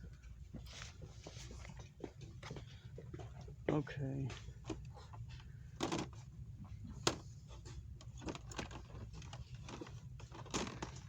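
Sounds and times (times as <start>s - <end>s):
store background hum: 0.0s - 11.0s.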